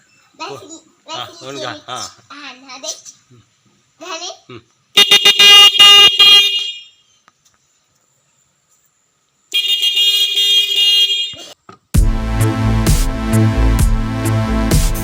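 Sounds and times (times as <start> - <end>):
electric bike horn blasts: 5.0 - 7.1, 9.5 - 11.4.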